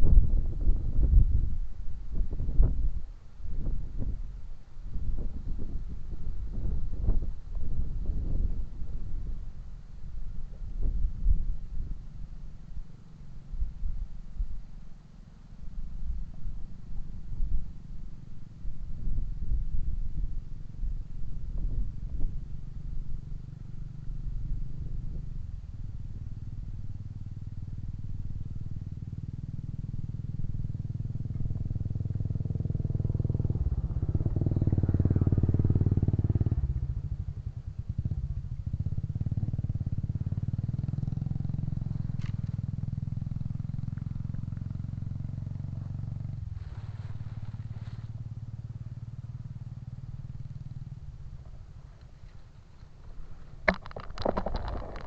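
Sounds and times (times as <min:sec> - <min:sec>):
small engine running: 0:38.8 - 0:48.2.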